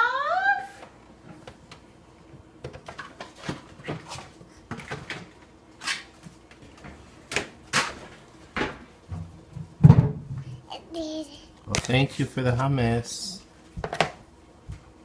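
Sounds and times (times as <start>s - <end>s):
food containers knocking and rattling: 2.6s - 5.5s, 13.8s - 14.2s.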